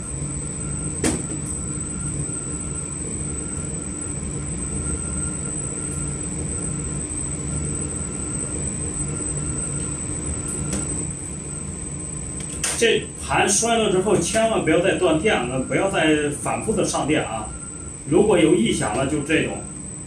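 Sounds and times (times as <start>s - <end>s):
blower fan whirring: 0.0s - 20.0s
sharp click: 12.4s - 12.8s.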